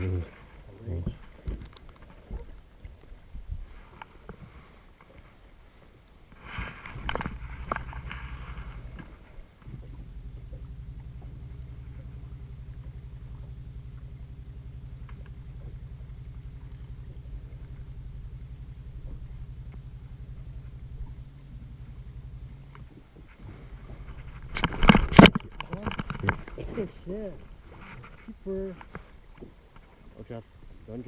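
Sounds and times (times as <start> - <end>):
boat motor humming: 0.0 - 31.0
faint clicks: 0.7 - 3.2, 15.0 - 17.8, 22.6 - 26.7.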